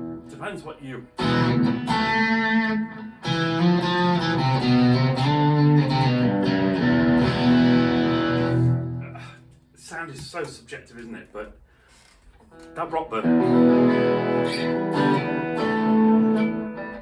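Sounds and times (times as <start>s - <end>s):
electric guitar through an amp: 1.2s - 9.5s, 12.5s - 17.0s.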